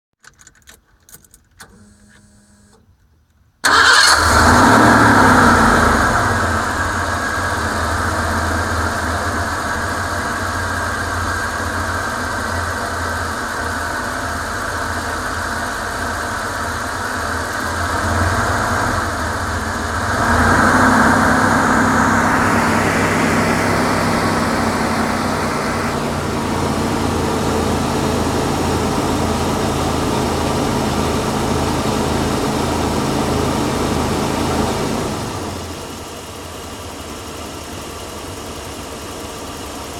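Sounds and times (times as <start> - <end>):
van engine cranking and starting: 3.6 - 39.9
van engine idling: 3.6 - 39.9.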